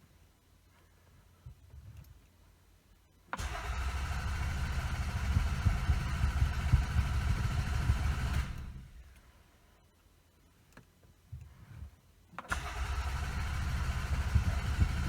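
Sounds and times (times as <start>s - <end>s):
starter motor cranking engine: 3.4s - 9.0s, 12.5s - 15.0s.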